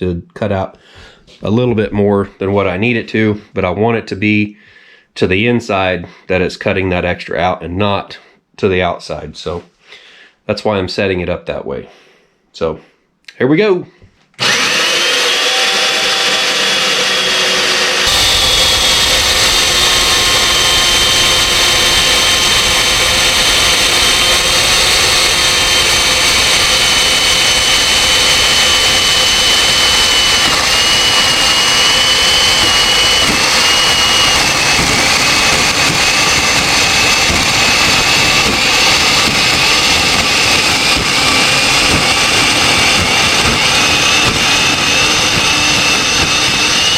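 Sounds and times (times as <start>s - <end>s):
chain mortiser motor whine: 14.4s - 46.9s.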